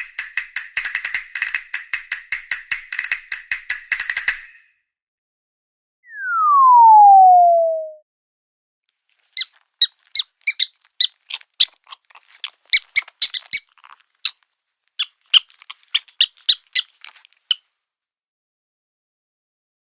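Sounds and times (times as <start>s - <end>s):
cartoon squeaks: 9.4s - 14.4s, 15.0s - 17.6s.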